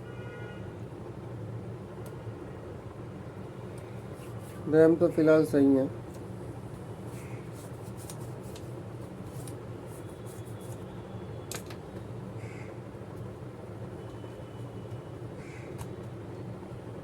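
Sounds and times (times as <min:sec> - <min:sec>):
steady low hum: 0:00.0 - 0:17.0
laptop parts clicking and tapping: 0:11.5 - 0:11.8.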